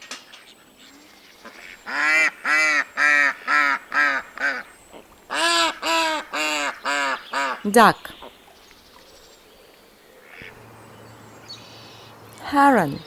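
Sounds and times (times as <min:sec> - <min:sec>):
duck quacking: 0:01.5 - 0:04.7, 0:10.2 - 0:10.7.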